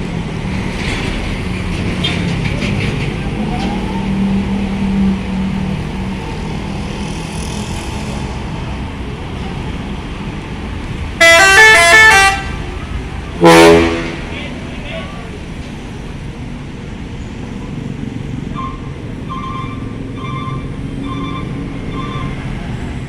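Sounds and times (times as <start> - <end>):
heavy vehicle engine running: 0.0 - 23.0
musical air horn tune: 11.2 - 12.6, 13.4 - 14.4.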